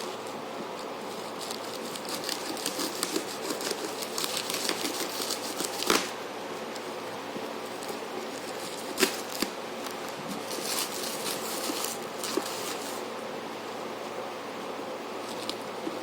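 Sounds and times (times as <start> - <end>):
packaging rustling: 0.0 - 6.1, 7.7 - 13.1
steady buzzing hum: 0.0 - 16.0.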